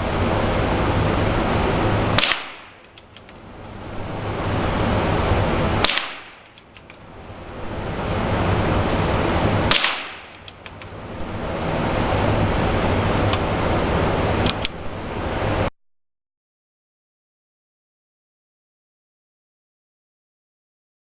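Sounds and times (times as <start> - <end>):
wind noise: 0.0 - 15.7
gunshots: 2.2 - 2.9, 5.8 - 6.6, 9.7 - 10.5.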